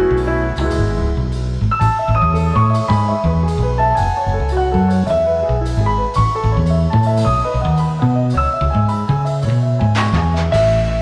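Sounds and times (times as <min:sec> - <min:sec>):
mallet percussion music with drums: 0:10.0 - 0:11.0.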